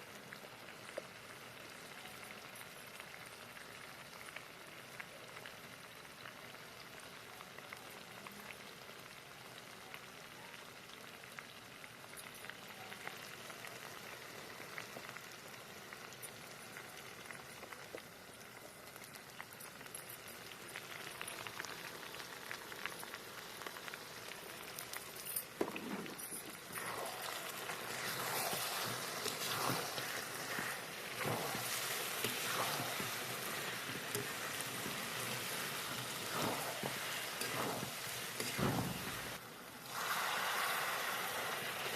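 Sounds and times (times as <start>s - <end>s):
curry sizzling and bubbling: 0.0s - 41.9s
stirring knocks and scrapes: 25.0s - 39.4s.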